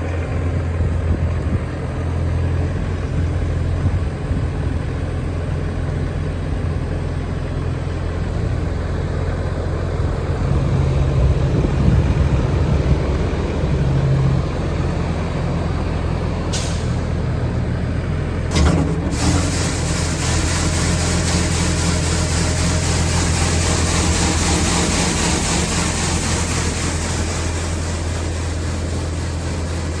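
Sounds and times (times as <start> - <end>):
diesel engine running: 0.0 - 30.0
hiss: 16.5 - 17.2, 18.5 - 30.0
sharp bump: 18.5 - 28.8.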